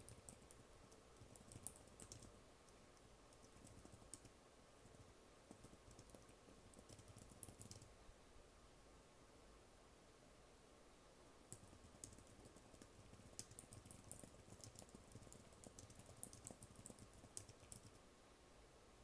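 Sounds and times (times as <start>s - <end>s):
typing on keyboard: 0.0s - 7.9s, 11.5s - 18.0s.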